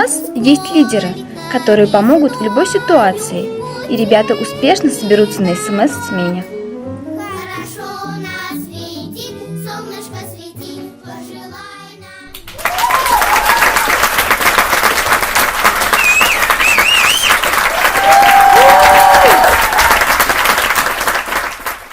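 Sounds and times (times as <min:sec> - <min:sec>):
children's song with singing: 0:00.0 - 0:12.6
audience applause: 0:12.3 - 0:21.9
high gliding cheers: 0:12.5 - 0:14.2, 0:15.9 - 0:20.3.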